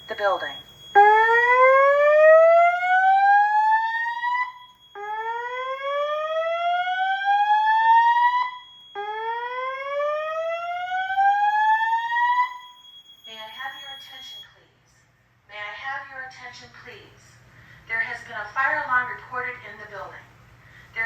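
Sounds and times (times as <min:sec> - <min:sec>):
spoken evacuation message: 0:00.0 - 0:00.6, 0:13.3 - 0:20.3
rising whoop alarm tone: 0:01.0 - 0:12.7.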